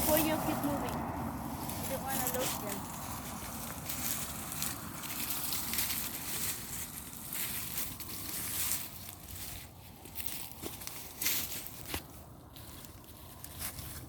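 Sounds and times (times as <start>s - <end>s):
rustling and crunching of mulch: 0.0s - 14.0s.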